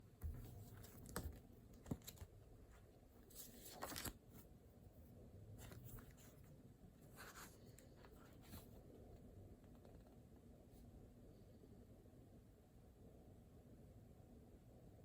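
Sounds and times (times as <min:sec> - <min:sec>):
paper rustling: 0:00.2 - 0:04.5, 0:05.5 - 0:06.5, 0:07.1 - 0:08.8.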